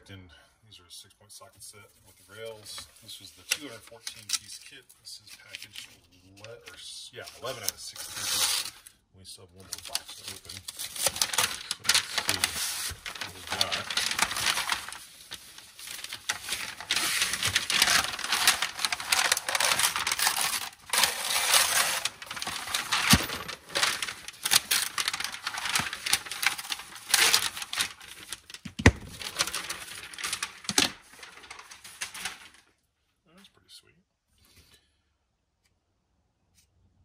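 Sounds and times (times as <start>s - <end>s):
packaging rustling and crinkling: 9.6s - 32.7s.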